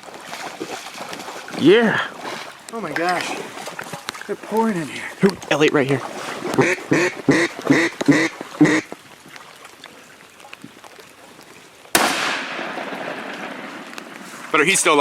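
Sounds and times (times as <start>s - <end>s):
duck quacks: 6.6s - 8.9s
shotgun blast: 12.0s - 13.8s.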